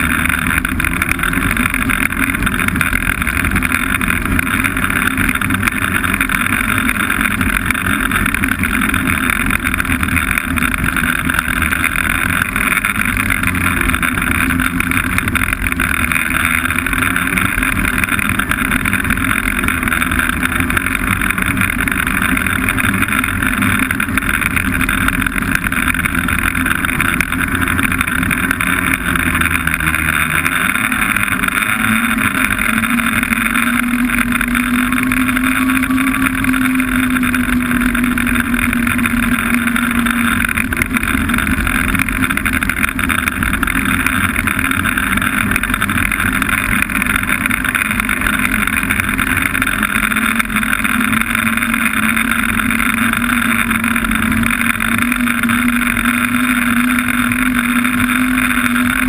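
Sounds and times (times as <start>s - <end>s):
snowmobile engine running: 0.0s - 59.0s
snowmobile track noise: 0.0s - 59.0s.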